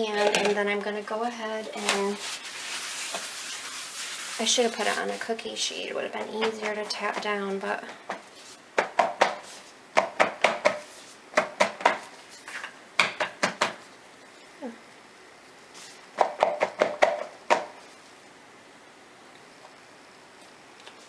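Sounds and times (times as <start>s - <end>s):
soap mold knocking on surface: 10.0s - 10.8s, 16.2s - 17.7s.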